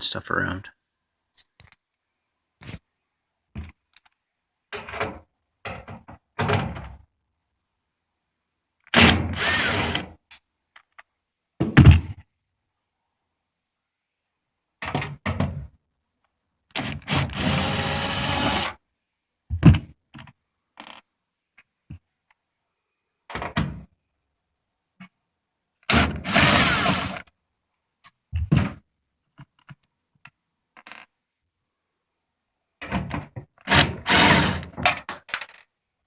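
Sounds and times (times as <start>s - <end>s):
thunks and knocks: 19.5s - 19.9s.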